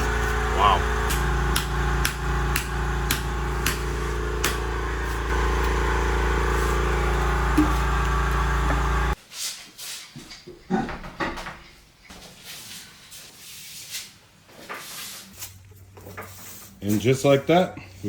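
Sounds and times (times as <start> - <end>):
steady mechanical hum: 0.0 - 9.2.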